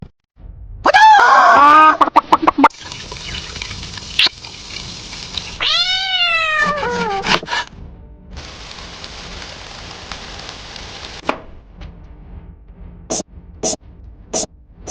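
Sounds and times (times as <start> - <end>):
steady hiss: 2.7 - 5.6, 8.4 - 11.3
cat meowing: 5.6 - 7.4.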